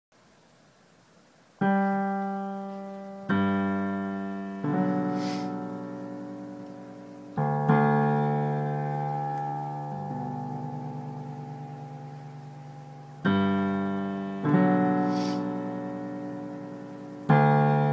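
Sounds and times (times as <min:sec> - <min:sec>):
piano chords: 0:01.6 - 0:17.9
brief hiss: 0:05.0 - 0:05.7, 0:14.9 - 0:15.7.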